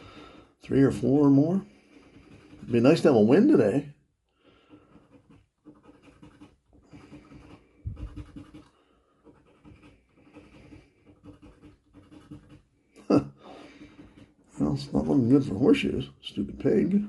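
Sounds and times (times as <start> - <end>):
coin scratching a lottery ticket: 0.7 - 3.7, 4.8 - 12.7, 13.6 - 14.9.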